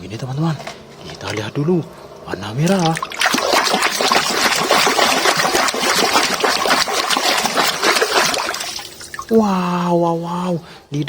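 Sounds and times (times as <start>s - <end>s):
water splashing and trickling: 2.7s - 9.6s.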